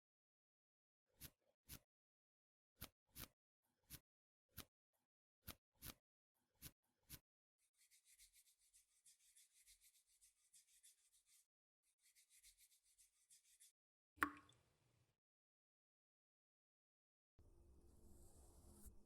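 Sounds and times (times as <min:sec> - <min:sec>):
rapid brushing strokes: 0:06.6 - 0:13.7.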